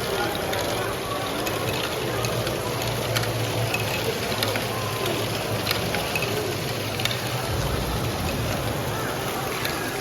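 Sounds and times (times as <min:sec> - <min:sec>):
toy train motor whirring: 0:00.0 - 0:07.5
busy exhibition hall noise: 0:00.0 - 0:10.0
clicks from wheels and track: 0:00.0 - 0:10.0.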